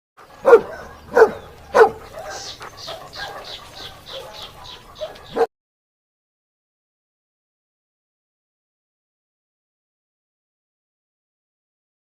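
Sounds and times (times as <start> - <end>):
dog barking: 0.4 - 5.5.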